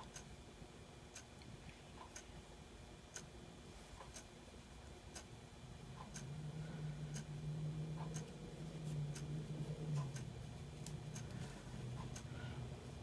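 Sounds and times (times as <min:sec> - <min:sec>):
clock ticking: 0:02.0 - 0:02.3, 0:03.1 - 0:03.3, 0:04.0 - 0:04.3, 0:05.1 - 0:05.3, 0:05.9 - 0:12.4.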